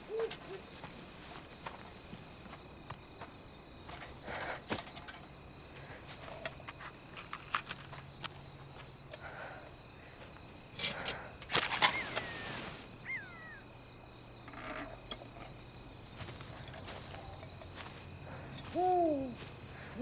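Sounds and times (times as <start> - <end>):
short falling chirps: 11.6 - 13.7.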